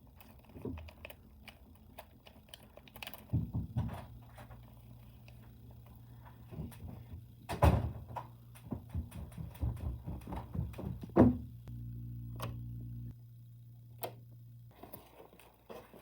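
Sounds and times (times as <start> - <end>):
steady low hum: 0.0 - 16.0
irregular knocks and thuds: 6.5 - 11.6.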